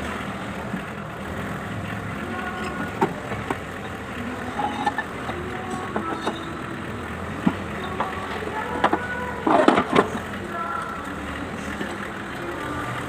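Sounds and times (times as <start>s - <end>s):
steady background rumble: 0.0s - 13.0s
metal clatter: 2.3s - 11.0s.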